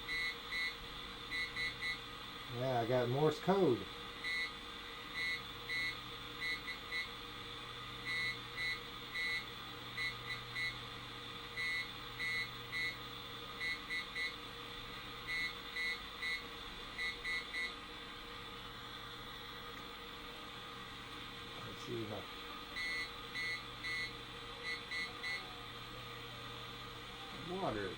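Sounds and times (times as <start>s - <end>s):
morse code beeps: 0.1s - 2.0s, 4.2s - 4.5s, 5.2s - 7.1s, 8.1s - 9.4s, 10.0s - 10.7s, 11.6s - 13.0s, 15.3s - 16.4s, 17.0s - 17.7s, 22.8s - 25.4s.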